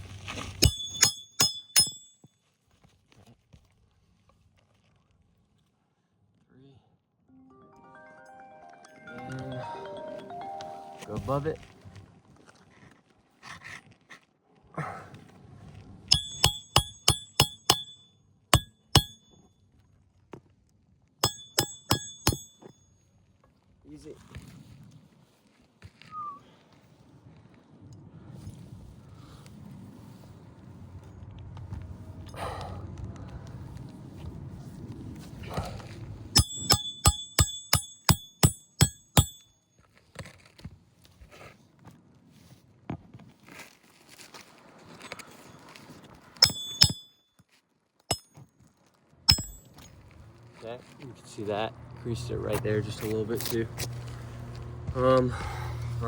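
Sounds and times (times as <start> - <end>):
hammer striking roofing nails: 16.1 - 18.0, 18.6 - 19.2, 21.2 - 22.7, 36.4 - 39.4, 46.4 - 47.0, 49.3 - 49.8.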